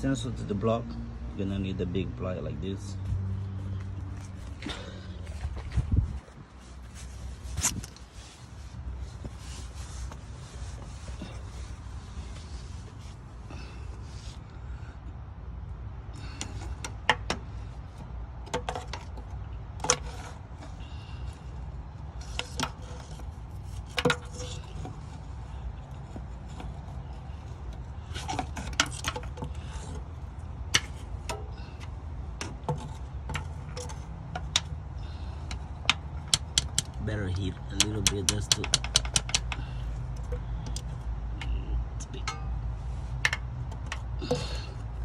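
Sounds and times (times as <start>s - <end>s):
steady low hum: 0.0s - 45.0s
metal tools clinking on engine: 27.6s - 45.0s.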